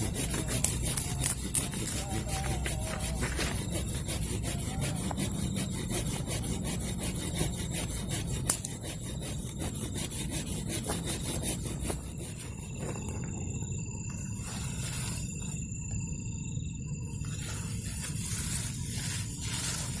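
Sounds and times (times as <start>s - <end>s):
hand saw cutting wood: 0.0s - 12.7s.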